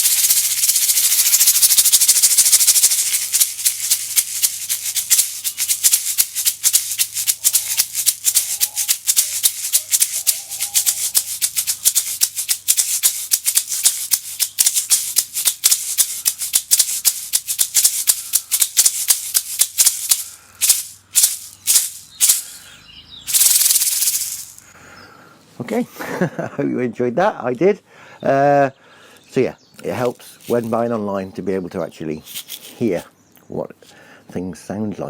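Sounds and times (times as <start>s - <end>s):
bead rattle shaking: 0.0s - 22.6s, 23.3s - 24.6s, 30.0s - 30.9s, 32.2s - 33.0s.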